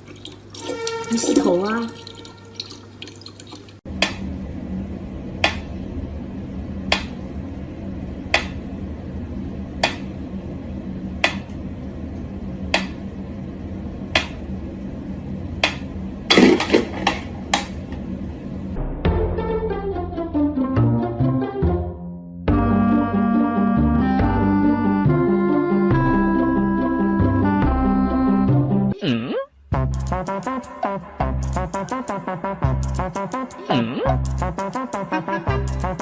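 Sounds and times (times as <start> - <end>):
steady low hum: 3.8 - 19.1, 29.6 - 36.0.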